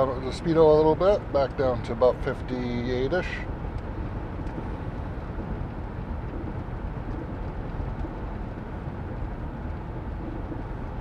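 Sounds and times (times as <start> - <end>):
car cabin road and engine rumble: 0.0 - 11.0.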